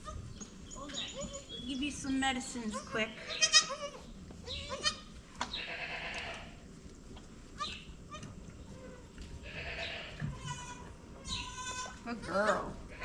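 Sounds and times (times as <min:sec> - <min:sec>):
goats bleating: 0:02.6 - 0:06.6, 0:09.4 - 0:13.0.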